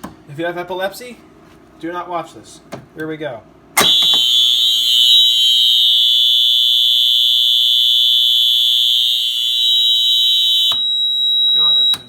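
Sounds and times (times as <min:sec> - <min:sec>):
alarm switch click: 0:03.8 - 0:05.7, 0:10.4 - 0:12.0
fire alarm horn: 0:03.8 - 0:12.0.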